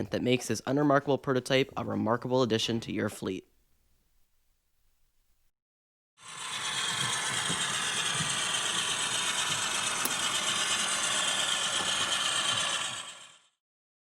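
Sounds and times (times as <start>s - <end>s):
small mechanism rattling: 6.3s - 13.3s.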